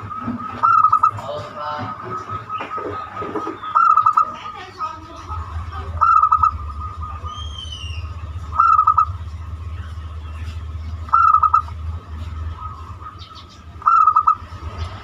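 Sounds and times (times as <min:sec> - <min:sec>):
dove cooing: 0:00.0 - 0:09.3, 0:11.0 - 0:11.8, 0:12.4 - 0:14.8
steady low hum: 0:00.0 - 0:15.0
bird whistle falling: 0:07.2 - 0:09.1.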